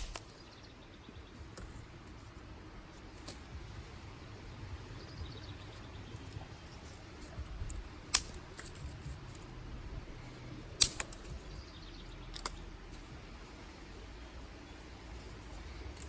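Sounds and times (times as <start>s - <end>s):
dry sticks snapping: 0.0s - 0.5s, 7.2s - 9.5s, 10.2s - 12.7s.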